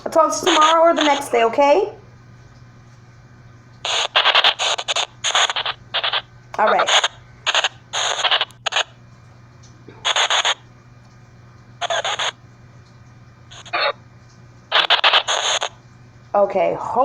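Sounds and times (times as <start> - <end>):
low electrical hum: 0.0 - 17.0
short bursts of white noise hiss: 3.8 - 9.0, 10.0 - 10.6, 11.8 - 12.4, 13.5 - 14.0, 14.7 - 15.8.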